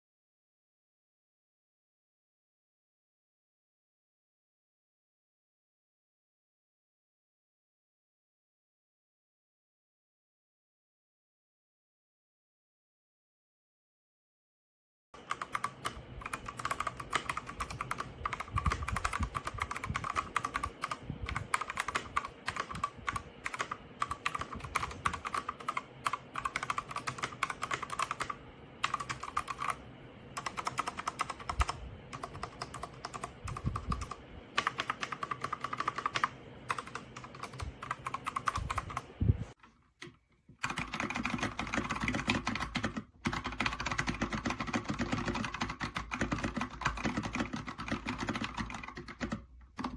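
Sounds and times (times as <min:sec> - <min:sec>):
mechanical keyboard typing: 0:15.2 - 0:39.2, 0:40.6 - 0:49.9.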